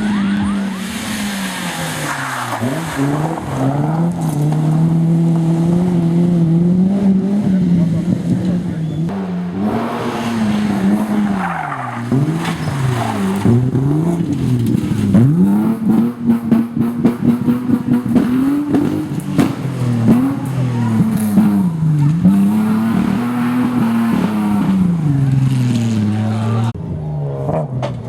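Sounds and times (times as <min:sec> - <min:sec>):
tyres skidding: 0:00.0 - 0:26.8
car engine revving: 0:00.0 - 0:27.9
sharp engine crackles: 0:09.1 - 0:26.8.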